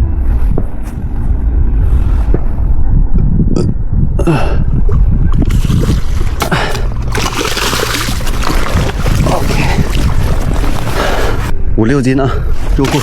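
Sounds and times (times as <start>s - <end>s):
wind buffeting microphone: 0.0s - 13.0s
water splashing and churning: 4.8s - 11.5s, 12.6s - 13.0s.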